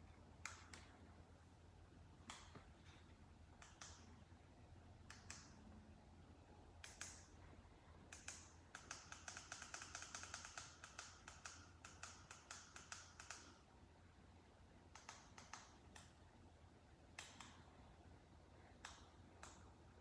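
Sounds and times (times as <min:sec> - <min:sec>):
remote buttons clicking: 0:00.4 - 0:01.0, 0:02.2 - 0:02.9, 0:03.5 - 0:04.3, 0:05.0 - 0:05.6, 0:06.8 - 0:07.4, 0:14.9 - 0:16.2, 0:17.1 - 0:17.8.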